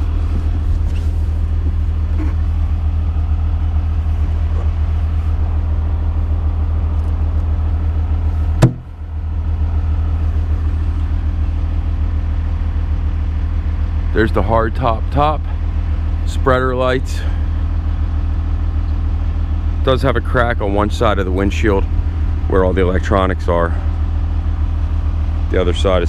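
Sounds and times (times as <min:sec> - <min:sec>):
low mechanical drone: 0:00.0 - 0:26.0
sharp knock: 0:08.6 - 0:08.9.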